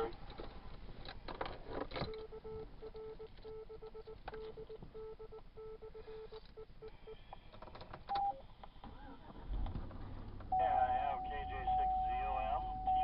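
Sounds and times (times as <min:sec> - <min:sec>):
morse code tone: 0:02.1 - 0:07.2, 0:10.5 - 0:13.0
two-note beep: 0:10.6 - 0:13.0.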